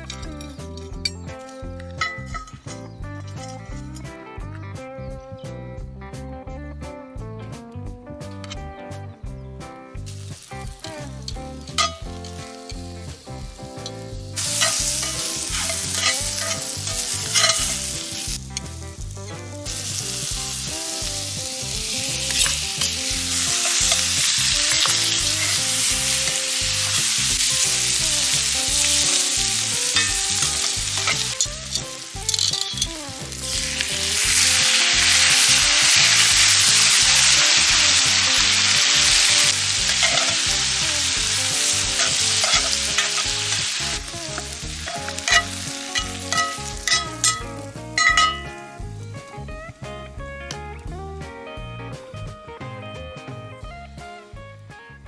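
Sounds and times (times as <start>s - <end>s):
food sizzling on a hot pan: 10.0s - 49.5s.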